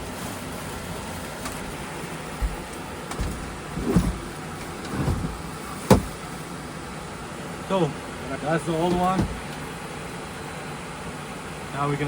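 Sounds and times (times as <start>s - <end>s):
knocks and clunks of handling metal coil: 1.4s - 6.2s, 8.8s - 9.6s.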